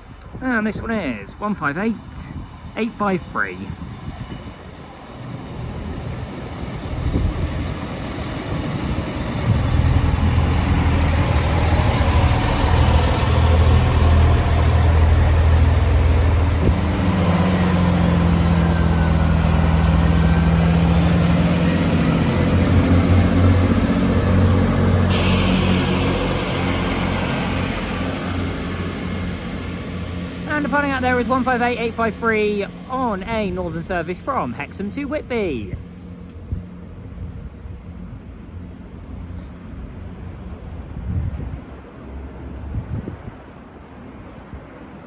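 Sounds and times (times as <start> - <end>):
train diesel engines running: 0.0 - 45.0
air hissing: 24.9 - 29.6.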